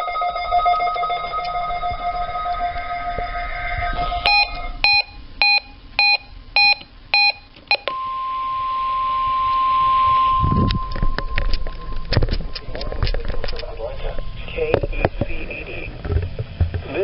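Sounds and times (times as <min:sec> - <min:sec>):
steady alarm tone: 0:04.1 - 0:11.0
short electronic beeps: 0:04.3 - 0:08.0.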